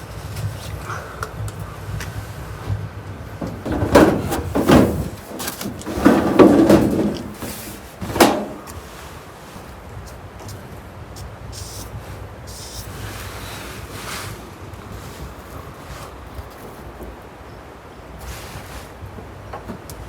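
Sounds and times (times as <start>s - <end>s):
heavy knocks and scrapes: 2.5s - 9.1s.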